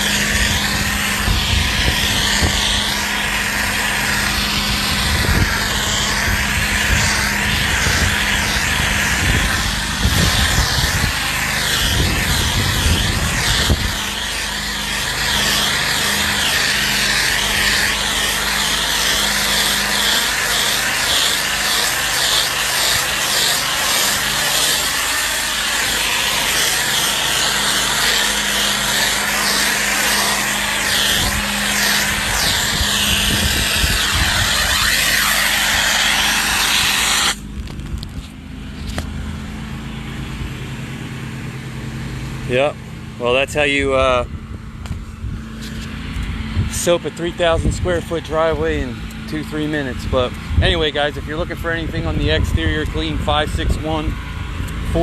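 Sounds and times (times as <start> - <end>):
spray nozzle hissing: 0.0 - 37.4
pressure washer engine running: 0.0 - 55.0.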